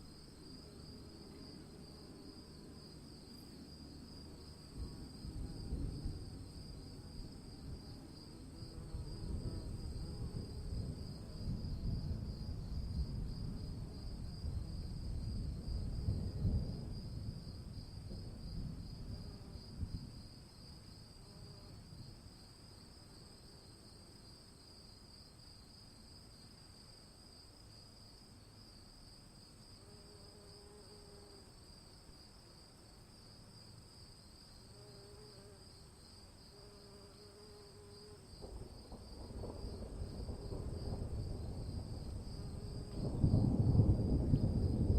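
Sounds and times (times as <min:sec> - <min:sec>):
thunder rolling: 0:38.4 - 0:44.9.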